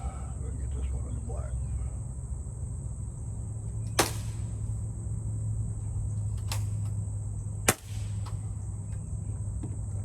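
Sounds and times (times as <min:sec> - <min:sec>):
steady low hum: 0:00.0 - 0:10.0
air pistol shot crack: 0:04.0 - 0:04.6, 0:07.6 - 0:08.4
fainter air gun shot: 0:04.0 - 0:04.6, 0:07.6 - 0:08.4.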